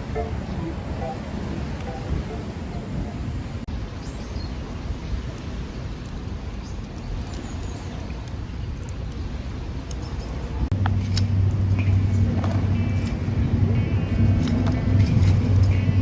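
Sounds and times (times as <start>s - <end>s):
steady low rumble: 0.0s - 16.0s
faint high chirps and ticks: 3.8s - 10.9s.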